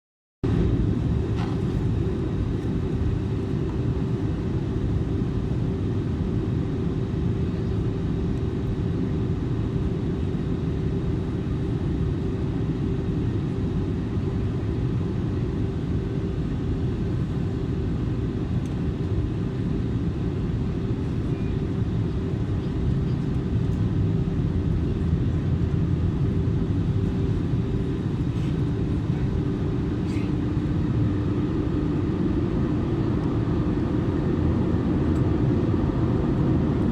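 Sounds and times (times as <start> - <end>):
cabin airflow and jet engines: 0.4 - 36.9
steady hum: 24.8 - 35.1.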